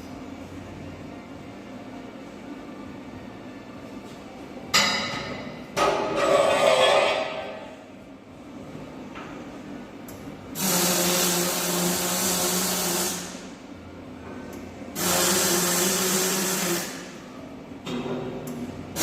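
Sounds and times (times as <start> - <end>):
electric welding crackling hiss: 10.6 - 13.5, 15.0 - 17.1.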